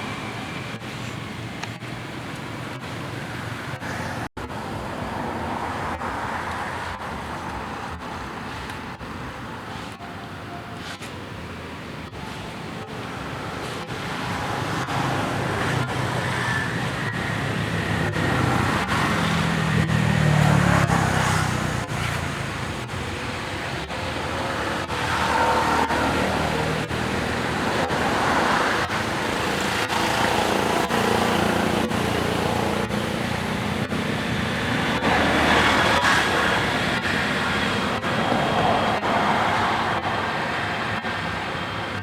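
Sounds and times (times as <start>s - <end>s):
passing vehicles: 0.0s - 42.0s
vehicle engine: 10.8s - 42.0s.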